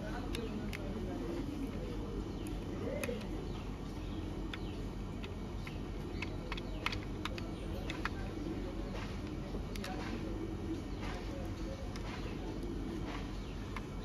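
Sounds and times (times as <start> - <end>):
low background hum: 0.0 - 14.0
plastic parts ticking: 2.4 - 10.3.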